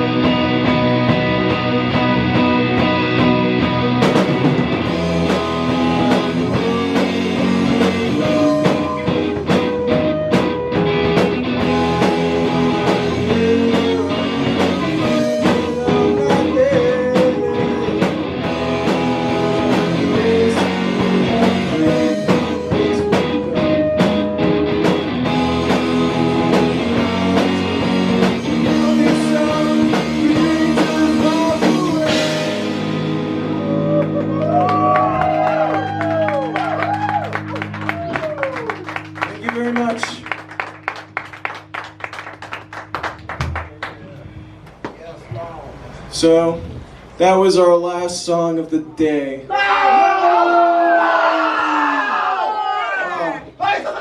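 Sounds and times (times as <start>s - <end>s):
rock band playing live: 0.0s - 44.8s
guitar: 0.0s - 52.2s
drum hits: 2.4s - 33.5s.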